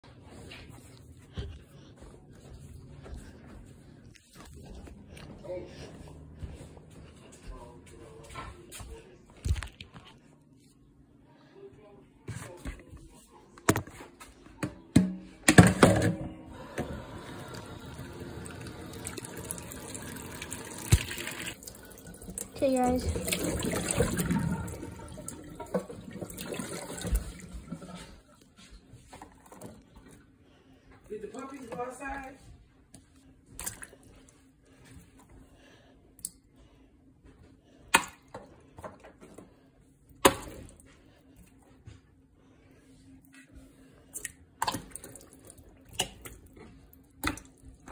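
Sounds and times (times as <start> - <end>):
water running from a tap: 17.0 - 27.9.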